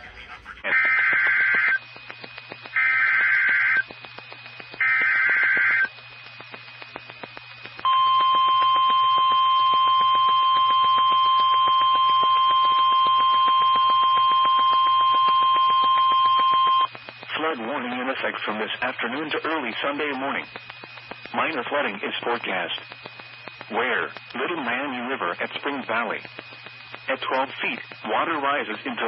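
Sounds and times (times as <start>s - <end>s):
raspy two-pitch data bursts: 0.7s - 3.9s, 4.5s - 6.1s
steady warning alarm tone: 4.7s - 6.0s, 7.8s - 16.9s.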